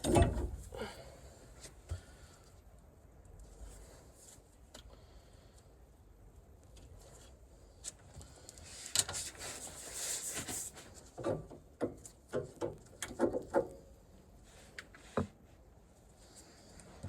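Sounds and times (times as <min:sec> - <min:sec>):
scraping rustle: 0:08.6 - 0:11.2.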